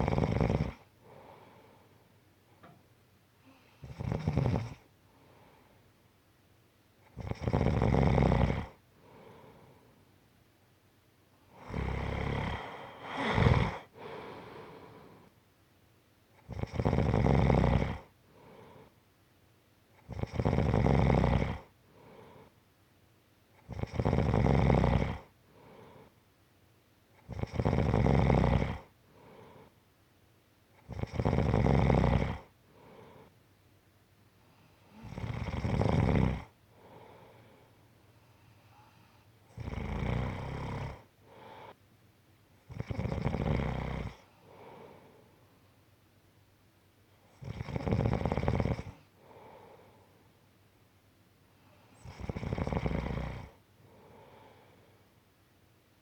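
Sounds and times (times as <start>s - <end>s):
person snoring: 0.0s - 0.8s, 3.8s - 4.8s, 11.6s - 15.3s, 16.5s - 18.8s, 20.1s - 22.4s, 23.7s - 26.1s, 27.3s - 29.7s, 30.9s - 33.3s, 35.0s - 37.2s, 39.6s - 41.8s, 42.7s - 45.1s, 47.4s - 49.8s, 52.0s - 54.5s
soft breath out: 1.0s - 2.7s, 3.4s - 3.9s, 5.0s - 5.9s, 9.0s - 10.0s, 11.6s - 15.4s, 36.7s - 39.4s, 41.2s - 41.8s, 44.2s - 45.6s, 48.9s - 50.4s, 53.8s - 55.1s.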